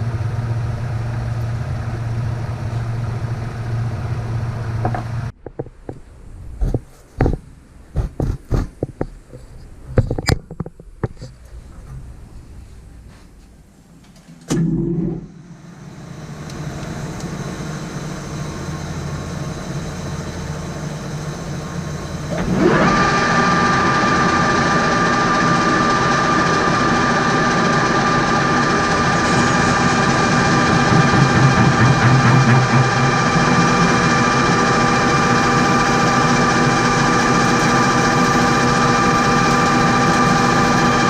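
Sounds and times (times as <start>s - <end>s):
lathe motor high-pitched whine: 15.6s - 41.0s
loud knock: 29.3s - 33.4s.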